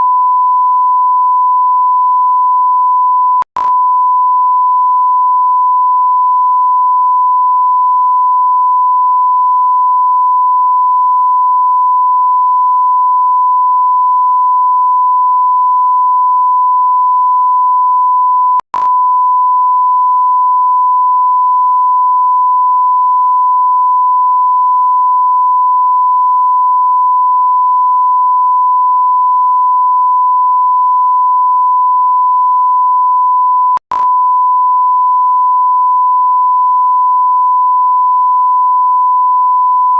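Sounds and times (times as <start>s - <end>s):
click: 3.4s - 3.8s, 18.6s - 19.0s, 33.8s - 34.2s.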